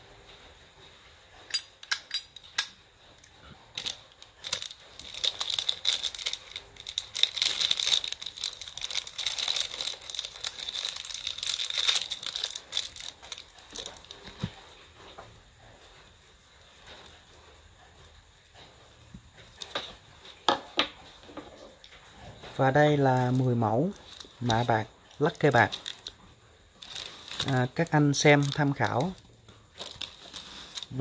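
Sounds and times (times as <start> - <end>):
dense crinkling: 3.7 - 15.4, 21.0 - 31.0.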